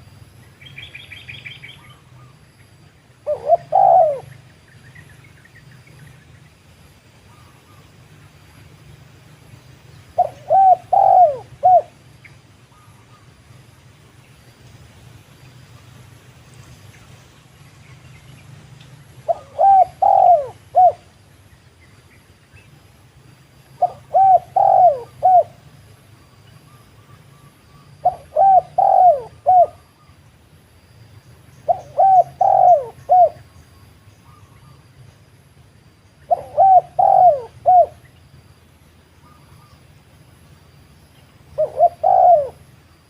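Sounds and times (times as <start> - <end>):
dove cooing: 3.2 - 4.5, 10.1 - 12.0, 19.2 - 21.1, 23.8 - 25.6, 28.0 - 29.9, 31.6 - 33.4, 36.2 - 38.1, 41.5 - 42.8.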